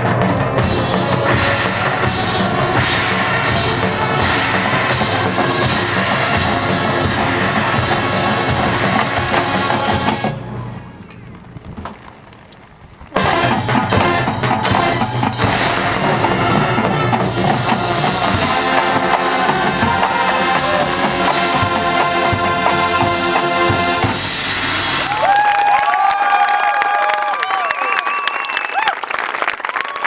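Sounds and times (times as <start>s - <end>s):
brass and percussion playing: 0.0s - 10.4s, 13.2s - 25.2s
crowd cheering: 0.0s - 10.6s, 13.2s - 30.0s.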